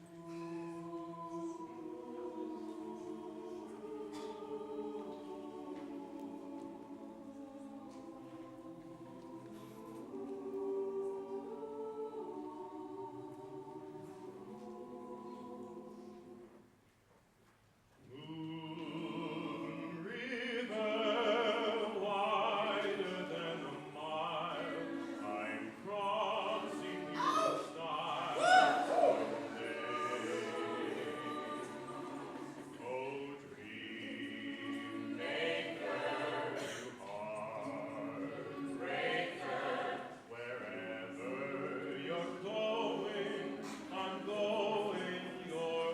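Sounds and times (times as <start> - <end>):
a cappella group singing: 0.0 - 16.8, 18.0 - 45.9
lead voice singing: 18.0 - 45.9.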